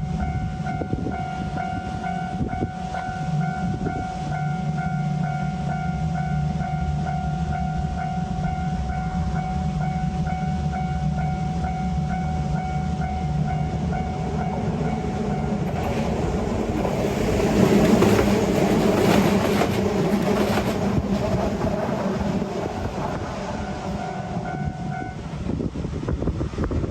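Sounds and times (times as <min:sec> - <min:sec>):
low rumble: 0:05.8 - 0:26.9
train wheels clattering: 0:13.2 - 0:24.8.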